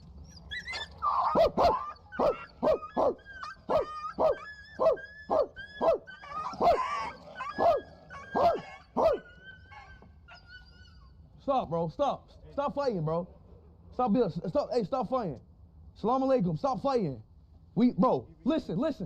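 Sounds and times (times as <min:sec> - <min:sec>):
dogs fighting: 0:00.0 - 0:10.9
dogs barking sharply: 0:00.8 - 0:10.5.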